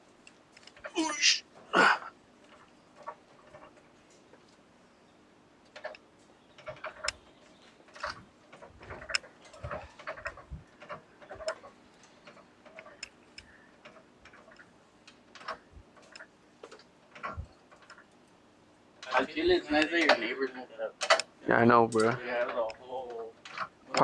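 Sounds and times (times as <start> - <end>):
light clicks and taps of tools: 5.6 - 18.4.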